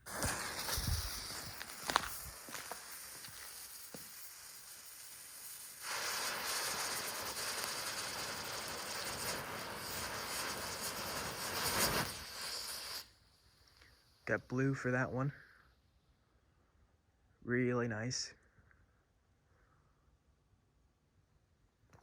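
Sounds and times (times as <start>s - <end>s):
ground spinner firework hissing: 0.0s - 15.8s.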